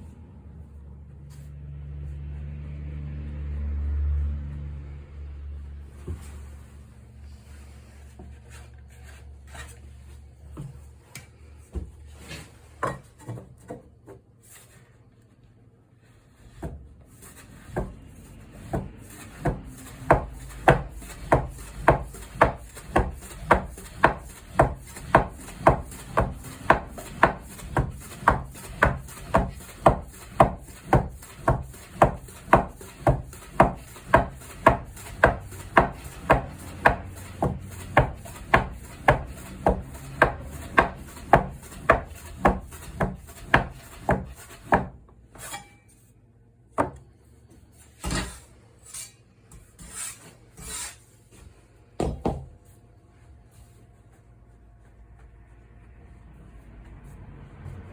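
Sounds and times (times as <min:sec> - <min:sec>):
knife chopping on wooden board: 0:18.6 - 0:45.5, 0:46.8 - 0:47.1.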